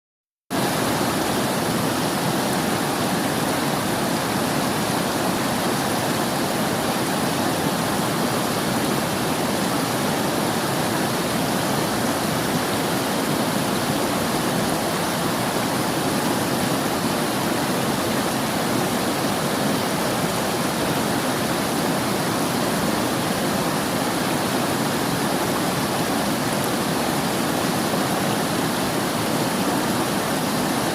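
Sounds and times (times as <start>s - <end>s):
river water rushing: 0.5s - 30.9s.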